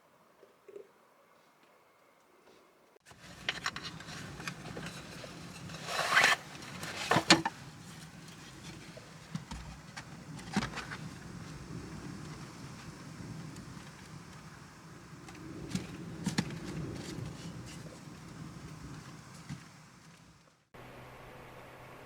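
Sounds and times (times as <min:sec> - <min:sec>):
close knocks and scrapes: 0:03.1 - 0:20.4
rain on a car: 0:07.6 - 0:20.6.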